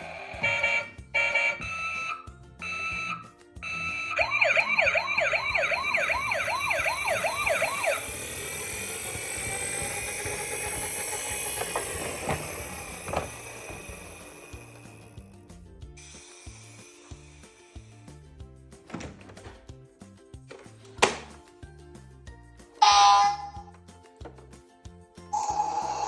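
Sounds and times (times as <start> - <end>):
toy siren yelping: 0.4 - 14.9, 22.8 - 23.7, 25.4 - 26.0.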